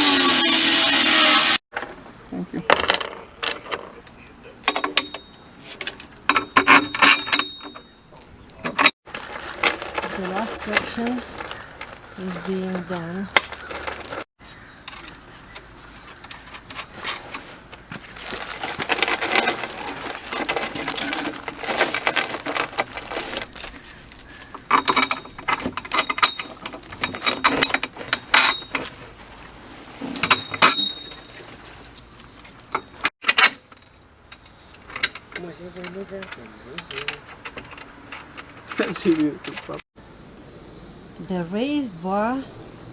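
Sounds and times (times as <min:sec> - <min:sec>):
metallic clinks and scraping: 0:00.0 - 0:39.8
ringing metal clinks: 0:01.8 - 0:08.9, 0:30.1 - 0:33.1.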